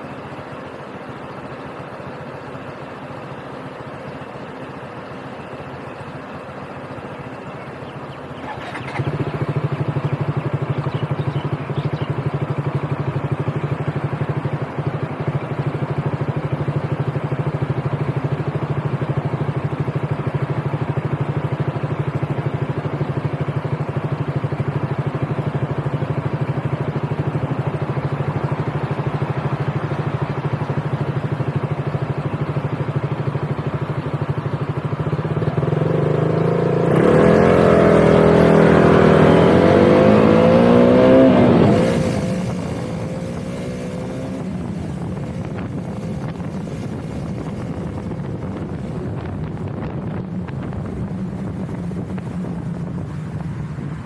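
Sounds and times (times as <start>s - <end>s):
motorbike engine accelerating: 7.1s - 54.0s.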